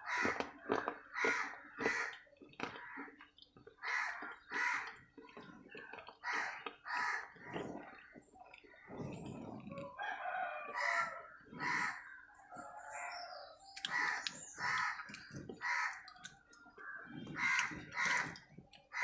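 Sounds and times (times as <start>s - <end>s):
crunching of chewing: 0.0s - 19.0s
rooster crowing: 9.7s - 11.8s.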